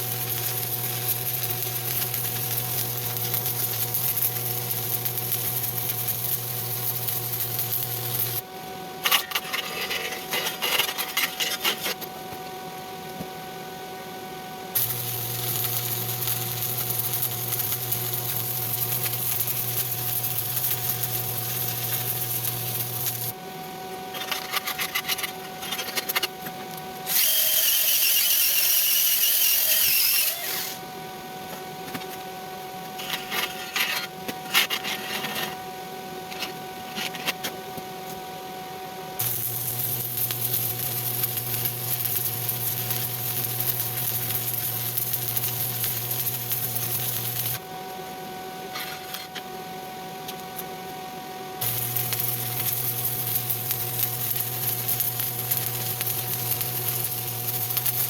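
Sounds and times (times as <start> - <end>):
welding arc sizzling: 0.0 - 12.0, 14.7 - 23.4, 27.1 - 30.8, 39.2 - 47.7, 51.6 - 58.0.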